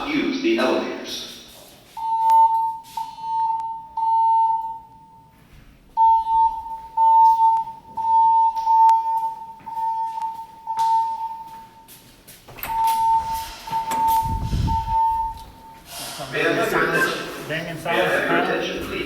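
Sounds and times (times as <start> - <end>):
fire alarm beeping: 1.9 - 15.9.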